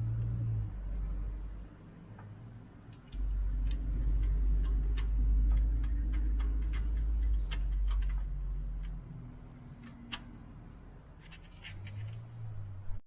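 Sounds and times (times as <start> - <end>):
hand tools clicking on metal: 2.9 - 9.0.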